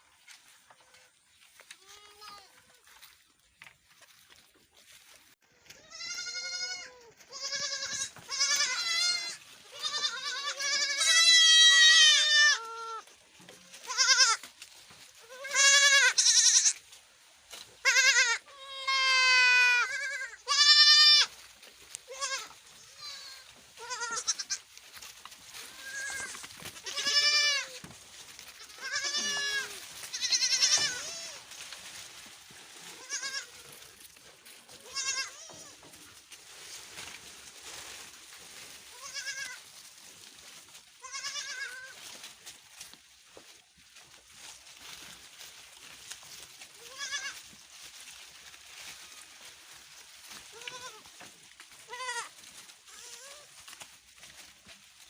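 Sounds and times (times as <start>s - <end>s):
goat kids bleating: 1.0s - 3.2s, 5.6s - 24.8s, 25.4s - 32.0s, 32.6s - 36.2s, 38.8s - 39.8s, 41.0s - 42.2s, 46.6s - 47.6s, 48.7s - 49.6s, 50.2s - 54.4s.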